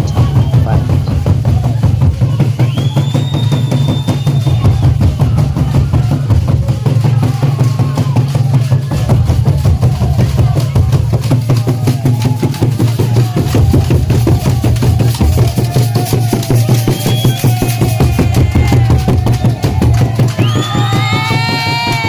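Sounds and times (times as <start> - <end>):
dance-pop music: 0.0 - 1.2.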